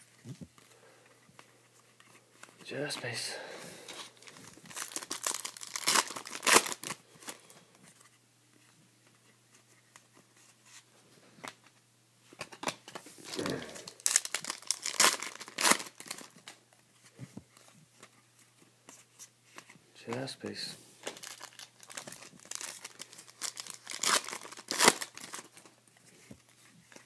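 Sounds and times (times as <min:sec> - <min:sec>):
wrappers crinkling and tearing: 0:04.1 - 0:07.4, 0:12.4 - 0:16.6, 0:21.0 - 0:25.8.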